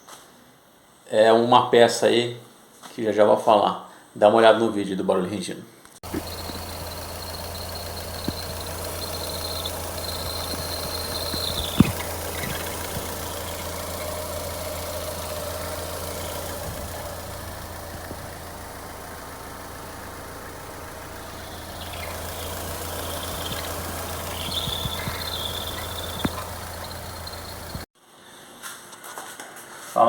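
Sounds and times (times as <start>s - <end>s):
car engine running: 6.0s - 27.9s
water pump creaking whine: 6.0s - 27.9s.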